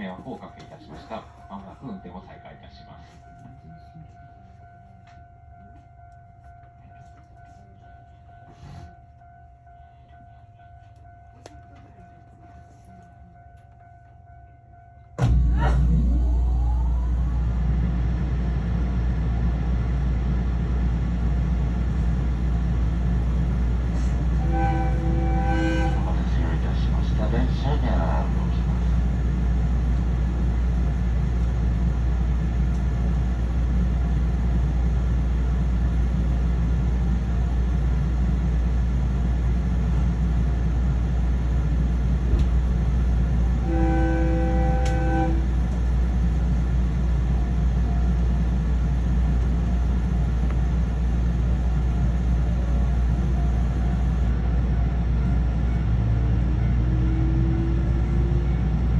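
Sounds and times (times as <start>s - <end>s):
train rumbling: 0.0s - 58.9s
train horn: 24.2s - 26.6s, 43.5s - 45.6s.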